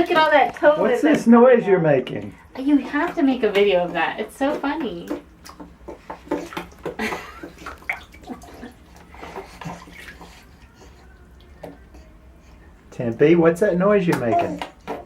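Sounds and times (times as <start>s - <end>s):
wet smacking in a bathtub: 1.9s - 15.0s
water splashing: 2.2s - 12.0s.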